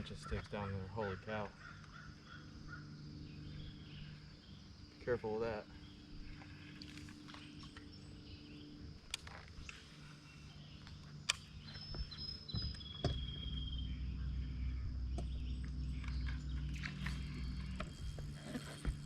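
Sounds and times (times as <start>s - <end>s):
faint high insect-like tones: 0.0s - 19.0s
low steady hum: 0.0s - 19.0s
sharp clicks: 10.9s - 11.9s.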